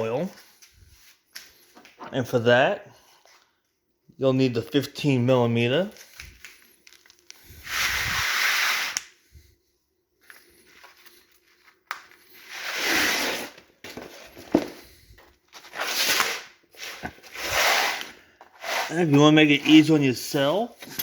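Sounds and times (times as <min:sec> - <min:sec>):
rustling hissing noise: 0:07.4 - 0:09.0.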